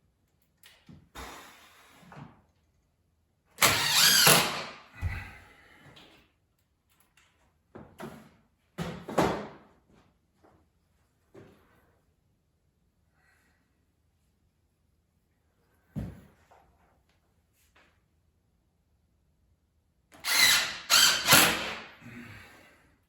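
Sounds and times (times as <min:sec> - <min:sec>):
power driver driving screws: 0:03.6 - 0:04.8, 0:20.2 - 0:21.9.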